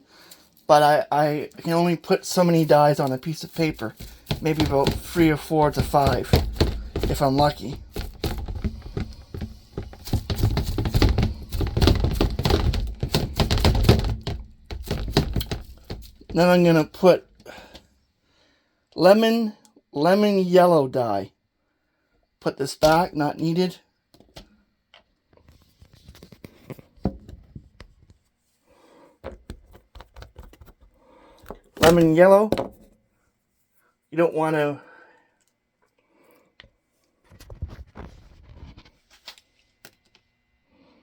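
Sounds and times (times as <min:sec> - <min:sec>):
bottles knocking on a tabletop: 0:03.6 - 0:16.4.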